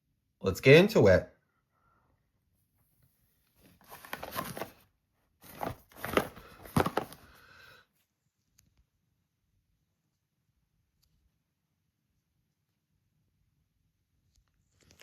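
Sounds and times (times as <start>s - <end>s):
packaging crinkling and rustling: 3.6s - 7.4s.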